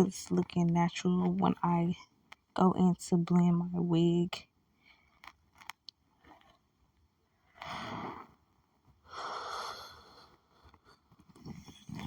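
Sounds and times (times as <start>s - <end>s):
person breathing: 9.0s - 11.0s.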